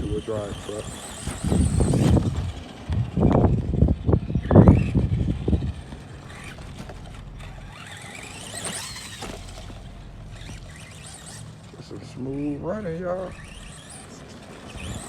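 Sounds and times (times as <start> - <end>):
electric toy truck motor whining: 0.0 - 15.0.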